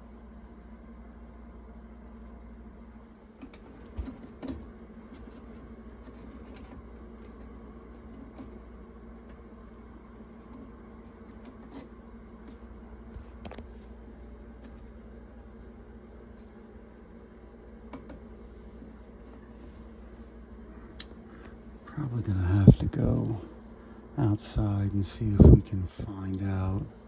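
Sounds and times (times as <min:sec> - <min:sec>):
steady low hum: 0:00.0 - 0:27.0.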